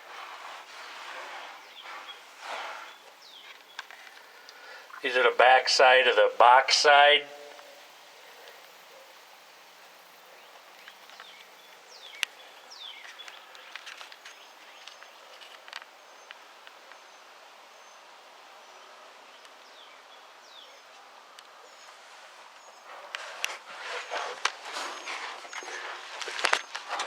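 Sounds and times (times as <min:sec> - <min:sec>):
bird chirps: 0:10.3 - 0:15.3.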